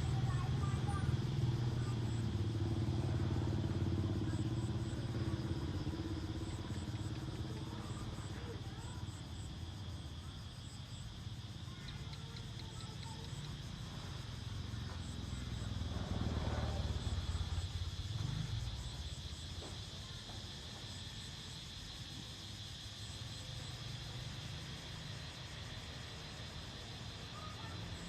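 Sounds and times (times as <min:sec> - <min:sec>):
insect chirps: 0:00.0 - 0:28.0
insects droning: 0:00.0 - 0:28.0.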